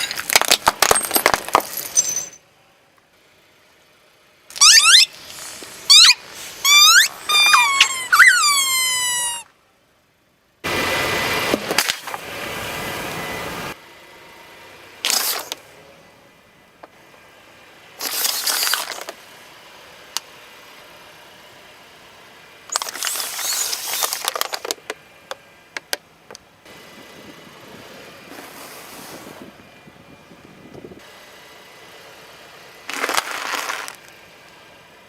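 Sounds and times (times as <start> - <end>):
tyres crushing objects: 0.0 - 2.0, 32.9 - 34.1
low vehicle background: 0.0 - 35.0.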